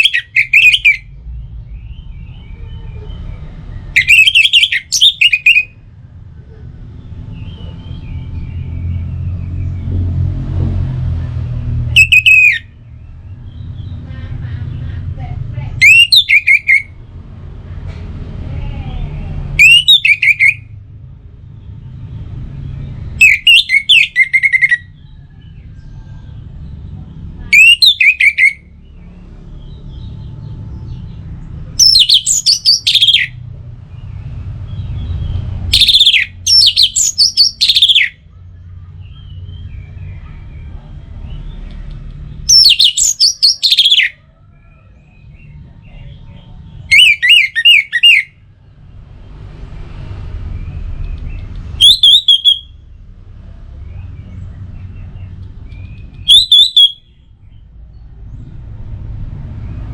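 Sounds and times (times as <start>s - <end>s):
thrush singing: 0.0s - 1.1s, 3.9s - 5.8s, 19.0s - 20.6s, 23.2s - 25.0s, 31.8s - 33.4s, 35.7s - 38.2s, 51.8s - 52.7s, 56.0s - 57.0s.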